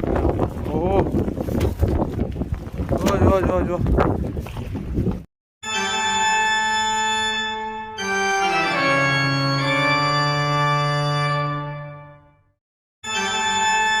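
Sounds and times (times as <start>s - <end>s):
sustained organ chords: 5.6s - 14.0s.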